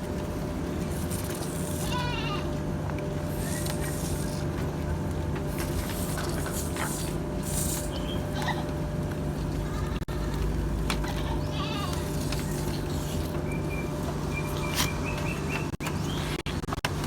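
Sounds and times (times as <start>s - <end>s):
steady low hum: 0.0s - 17.0s
goats bleating: 1.8s - 2.6s, 11.0s - 12.2s.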